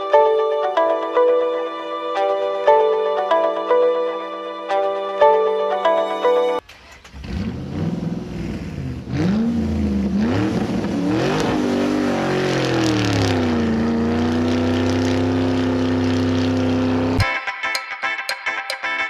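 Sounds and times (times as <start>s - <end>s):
car engine revving: 6.7s - 17.2s.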